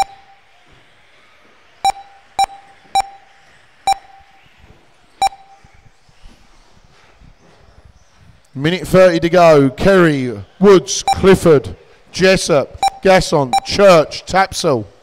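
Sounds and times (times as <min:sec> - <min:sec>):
short electronic beeps: 0:00.0 - 0:00.4, 0:01.8 - 0:03.3, 0:03.9 - 0:04.4, 0:05.2 - 0:05.6, 0:11.1 - 0:11.4, 0:12.8 - 0:13.9.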